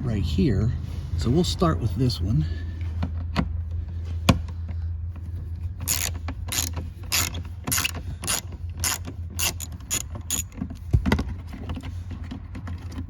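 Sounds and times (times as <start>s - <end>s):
ratchet clicking: 5.8s - 10.6s.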